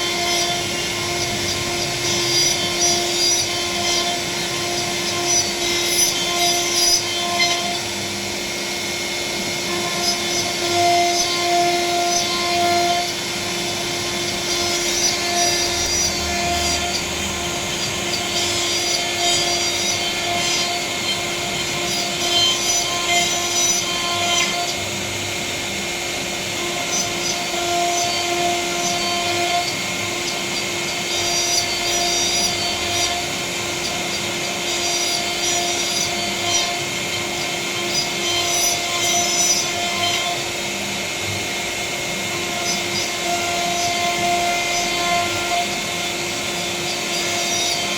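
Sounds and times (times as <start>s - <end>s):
bit cutting into wood: 0.0s - 7.9s, 9.6s - 24.8s, 26.6s - 40.5s
router spindle whine: 0.0s - 47.9s.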